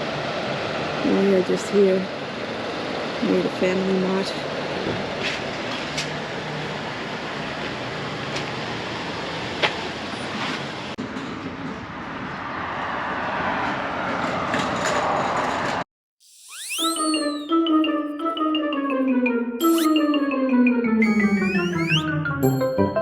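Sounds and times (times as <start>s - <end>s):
outdoor background noise: 0.0s - 15.8s
rising swoosh: 16.2s - 17.7s
music: 16.8s - 23.0s.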